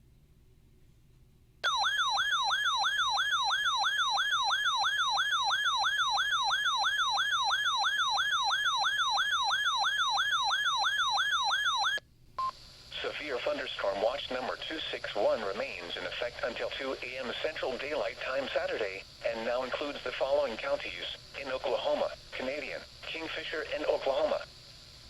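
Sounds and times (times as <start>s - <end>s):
warbling alert siren: 1.6s - 12.0s.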